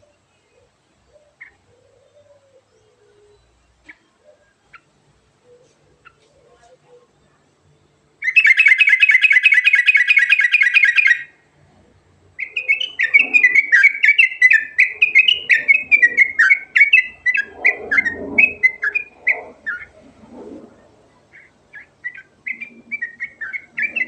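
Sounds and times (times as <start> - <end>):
bird chattering notes: 8.2 - 11.2, 12.4 - 19.9, 21.3 - 24.0
bird buzzy trill: 12.4 - 20.0.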